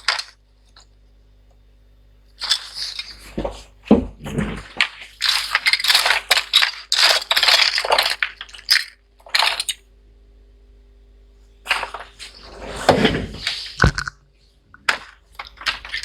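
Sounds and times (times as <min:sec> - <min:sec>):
small hard parts clinking: 0:00.0 - 0:00.9, 0:02.4 - 0:03.7, 0:04.3 - 0:09.8, 0:14.8 - 0:16.0.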